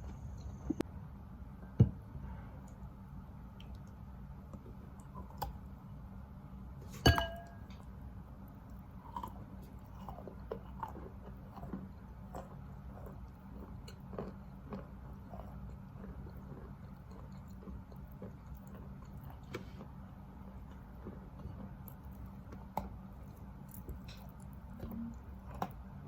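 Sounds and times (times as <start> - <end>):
wet chewing: 8.4 - 26.0.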